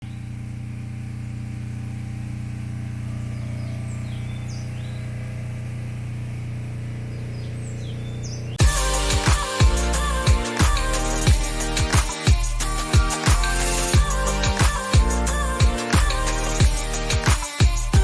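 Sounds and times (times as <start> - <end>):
birds chirping: 0.0 - 11.2
steady low hum: 0.0 - 16.9.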